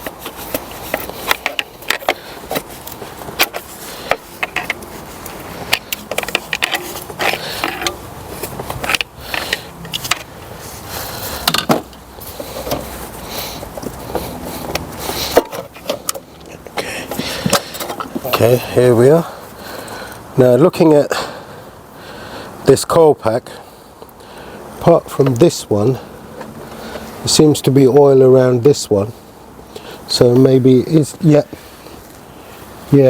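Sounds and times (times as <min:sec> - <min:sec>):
clicks and scrapes of engine part: 0:00.0 - 0:18.4.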